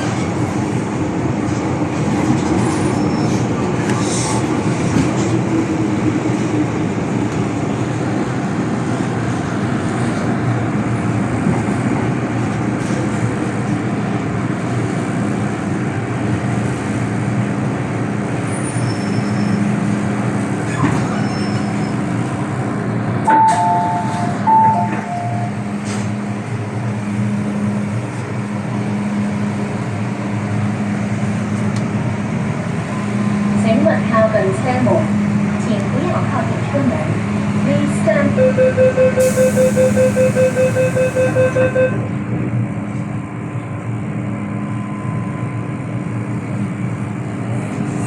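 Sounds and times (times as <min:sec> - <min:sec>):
metro wheels rumbling: 0:00.0 - 0:48.0
two-note electronic chime: 0:23.3 - 0:25.6.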